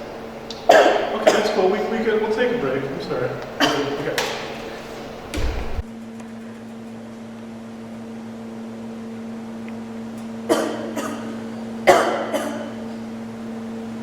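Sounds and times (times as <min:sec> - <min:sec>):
girl coughing: 0:00.7 - 0:01.6, 0:03.6 - 0:04.0, 0:10.5 - 0:13.0.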